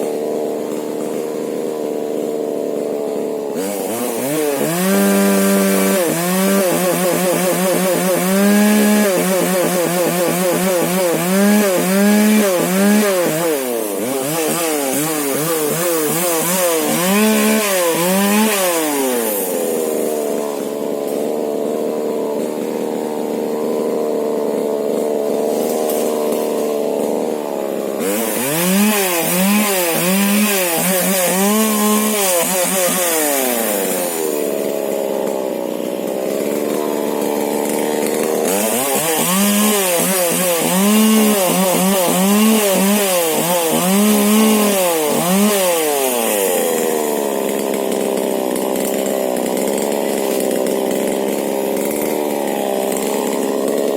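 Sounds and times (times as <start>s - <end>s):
chainsaw revving: 0.0s - 53.9s.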